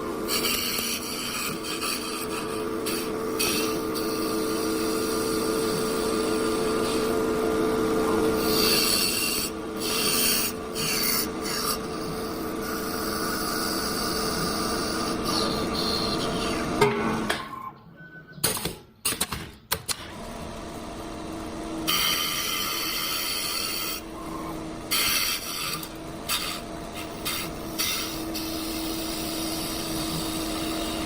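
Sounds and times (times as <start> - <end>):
wood lathe humming: 0.0 - 16.8, 20.2 - 31.0.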